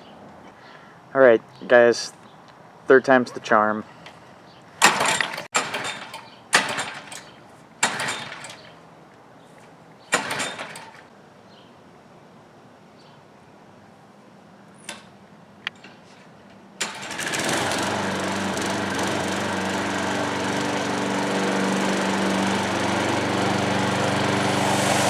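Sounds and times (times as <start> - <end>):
lawn mower engine running: 16.8 - 25.0.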